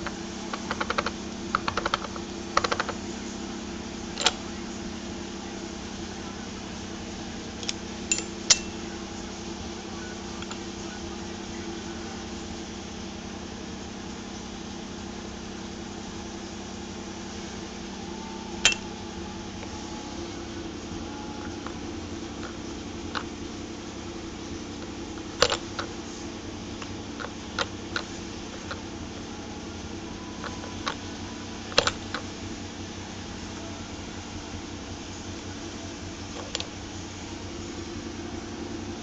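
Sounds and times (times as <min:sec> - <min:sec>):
low hum: 0:00.0 - 0:39.0
device clicking: 0:25.2 - 0:25.9, 0:31.7 - 0:32.2.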